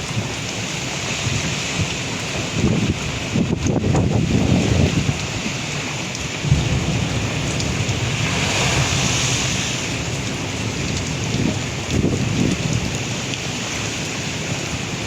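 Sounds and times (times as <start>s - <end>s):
rain hiss: 0.0s - 15.0s
wind gusting across microphone: 0.0s - 15.0s
pounding surf: 6.4s - 15.0s.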